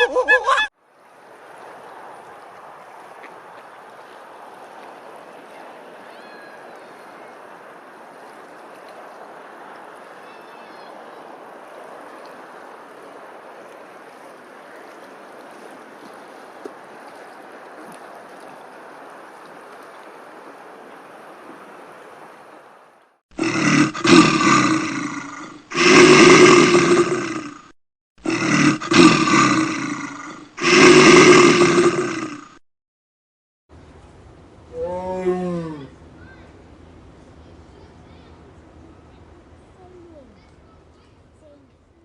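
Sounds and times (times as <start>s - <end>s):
large animal roaring: 23.4s - 32.6s.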